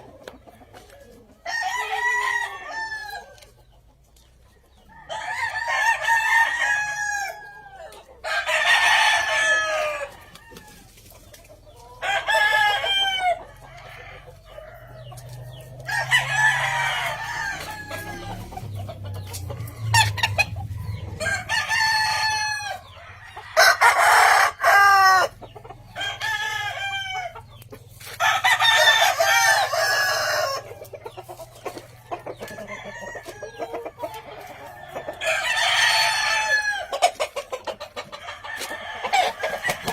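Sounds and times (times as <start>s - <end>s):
roosters crowing: 0.0s - 39.9s.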